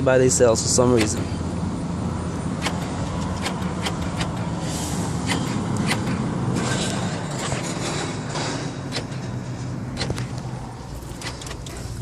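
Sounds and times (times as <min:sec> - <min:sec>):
door lock actuators clicking: 0:00.9 - 0:01.4, 0:02.6 - 0:04.5, 0:05.2 - 0:06.2, 0:08.8 - 0:12.0.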